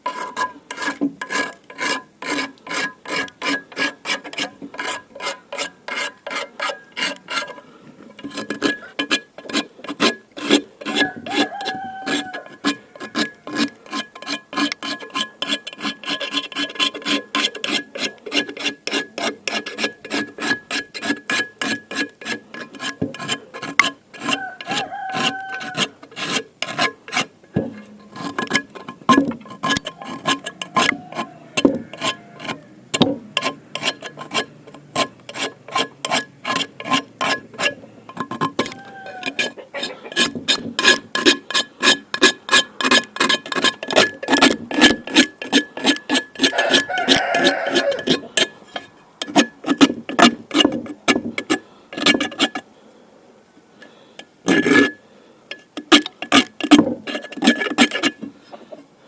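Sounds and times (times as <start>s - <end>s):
scrubbing cast iron skillet: 0.0s - 52.6s
short squeaks: 29.5s - 41.1s.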